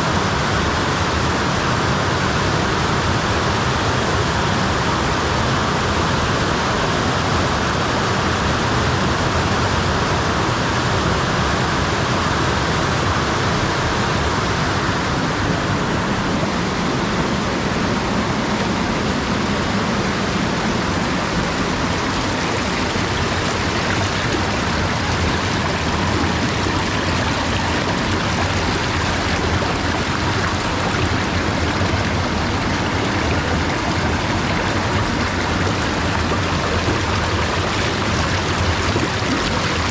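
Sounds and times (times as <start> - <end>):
waterfall rushing: 13.7 - 39.9.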